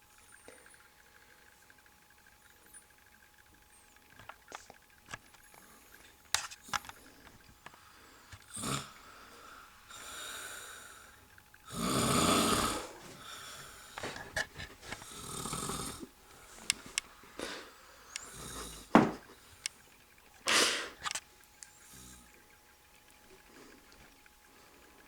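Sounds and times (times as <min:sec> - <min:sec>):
man snoring: 0:08.5 - 0:09.0, 0:11.7 - 0:13.6, 0:15.0 - 0:16.1, 0:18.2 - 0:18.9.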